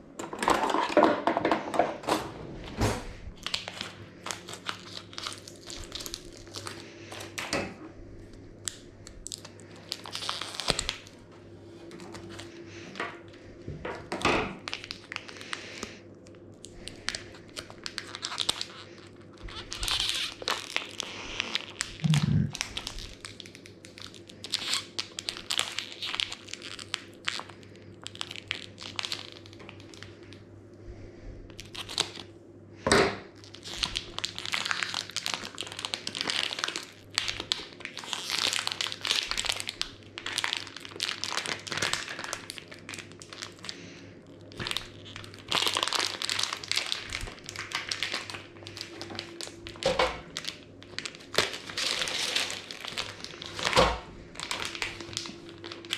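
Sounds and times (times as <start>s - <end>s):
faint steady hum: 0.0s - 55.9s
wrapping crinkling and crumpling: 3.4s - 7.5s, 8.5s - 30.4s, 31.5s - 32.3s, 33.4s - 55.9s.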